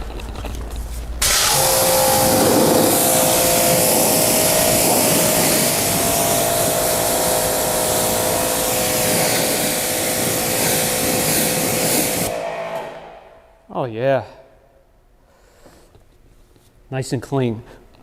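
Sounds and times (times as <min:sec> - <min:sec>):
pressure washer spray hissing: 0:01.2 - 0:12.8
washer motor and pump whine: 0:01.2 - 0:13.6.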